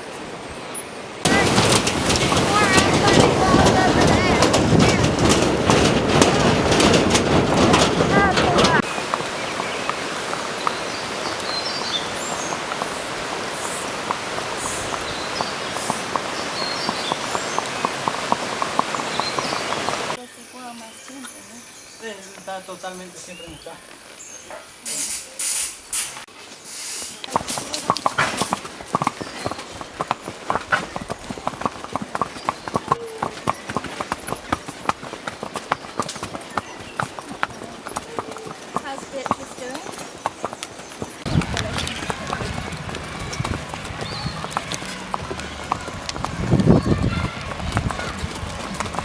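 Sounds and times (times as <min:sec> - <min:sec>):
horse hooves walking: 0:01.2 - 0:21.5, 0:22.1 - 0:49.0
steady hiss: 0:20.0 - 0:27.6.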